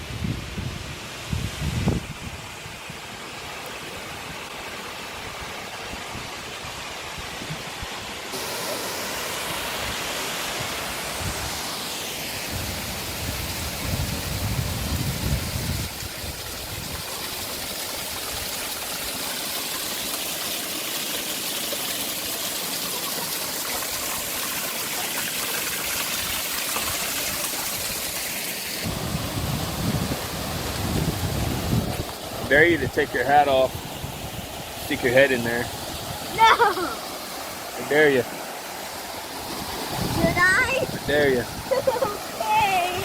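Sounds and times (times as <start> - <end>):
waterfall rushing and splashing: 0.0 - 43.0.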